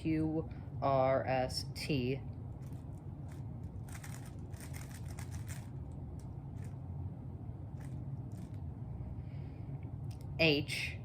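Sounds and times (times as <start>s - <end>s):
steady low hum: 0.0s - 11.0s
puzzle cube plastic clicking: 2.6s - 6.8s.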